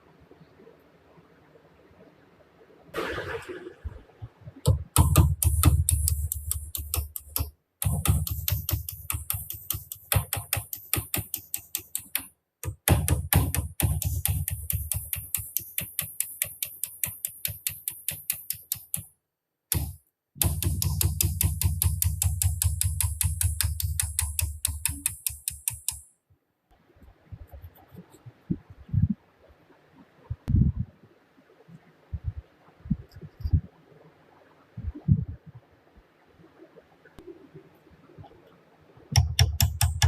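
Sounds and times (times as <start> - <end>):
electronic music with ticking beat: 4.7 - 19.1.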